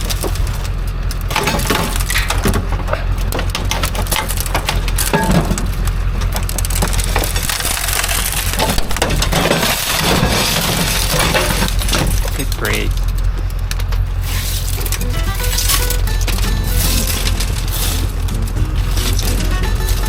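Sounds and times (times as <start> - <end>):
scrap metal clattering: 0.0 - 12.6, 14.1 - 20.0
low engine rumble: 0.0 - 20.0.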